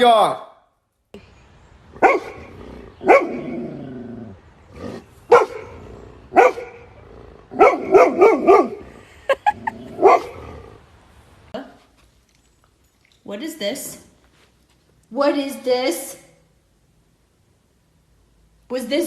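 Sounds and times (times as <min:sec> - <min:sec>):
dog barking: 0:02.0 - 0:03.6, 0:05.3 - 0:06.9, 0:07.5 - 0:08.9, 0:10.0 - 0:10.4.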